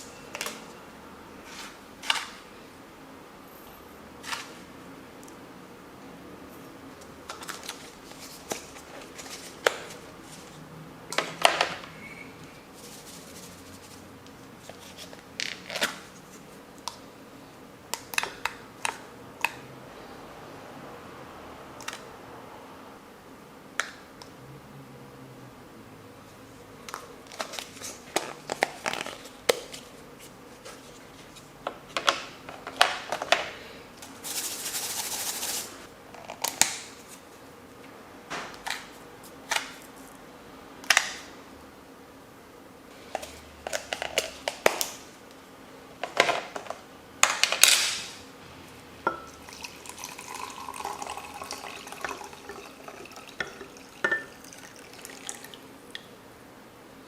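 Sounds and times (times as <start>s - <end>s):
liquid pouring into cup: 49.3s - 55.6s
spoon clinking on cup: 53.4s - 54.4s.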